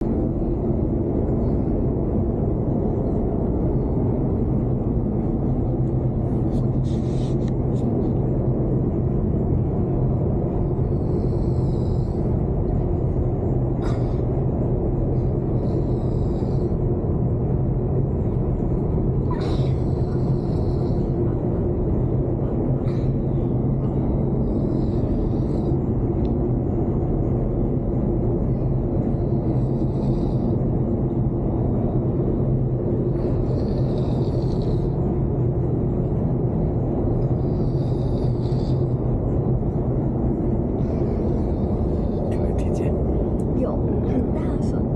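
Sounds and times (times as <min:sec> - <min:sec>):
loud steady low rumble: 0:00.0 - 0:44.9
man snoring: 0:33.3 - 0:35.0.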